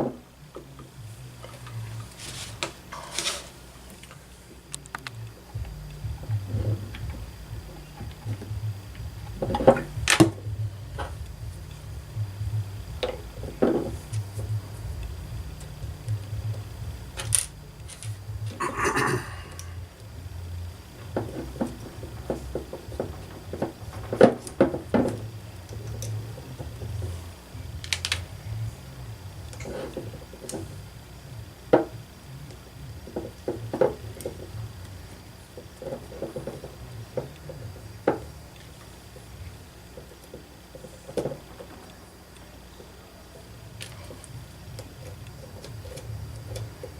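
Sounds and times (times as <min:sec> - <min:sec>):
engine parts and tools knocking: 0:00.0 - 0:30.9, 0:33.0 - 0:42.9
faint low hum: 0:00.0 - 0:46.9
metal scrape: 0:02.2 - 0:03.6.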